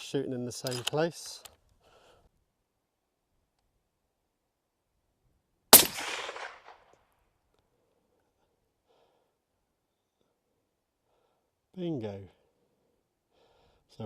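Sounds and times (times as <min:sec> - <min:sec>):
rifle shot with echo: 0:05.7 - 0:06.9.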